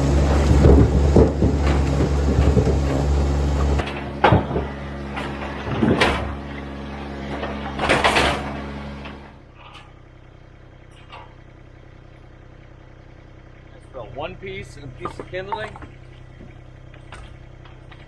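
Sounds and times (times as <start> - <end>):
loud clunks: 0.0 - 10.0, 14.8 - 18.0
engine running: 0.0 - 18.0.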